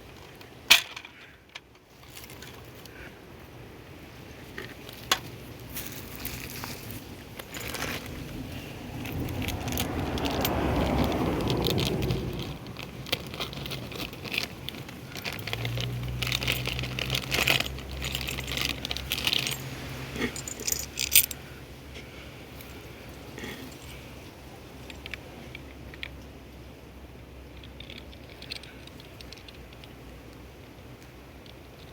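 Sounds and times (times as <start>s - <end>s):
plastic packaging rustling: 5.8s - 19.6s
low hum: 7.4s - 13.2s.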